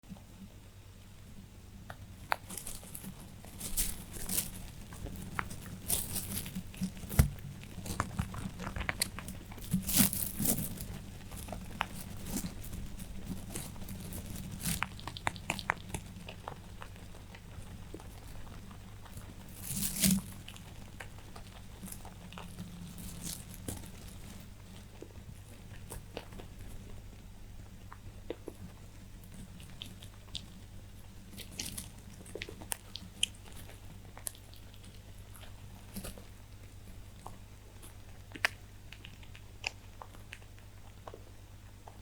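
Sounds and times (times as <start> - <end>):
rabbits chewing dry hay: 0.1 - 42.0.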